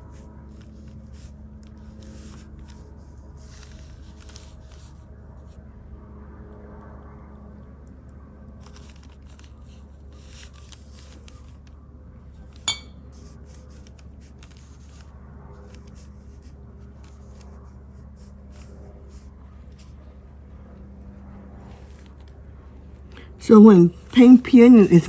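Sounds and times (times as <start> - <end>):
steady low hum: 0.0 - 25.0
glass clinking: 12.7 - 13.0.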